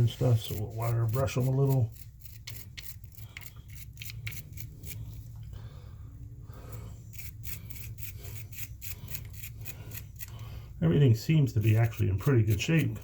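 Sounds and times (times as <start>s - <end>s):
wire brush scrubbing metal: 0.0s - 5.1s, 11.1s - 13.0s
steady low hum: 0.0s - 13.0s.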